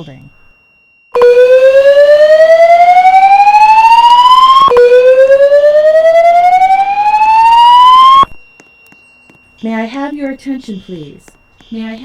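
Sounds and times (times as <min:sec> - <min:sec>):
fire alarm whoop tone: 0:01.1 - 0:09.6
spoken evacuation announcements: 0:01.2 - 0:08.3, 0:09.6 - 0:12.0.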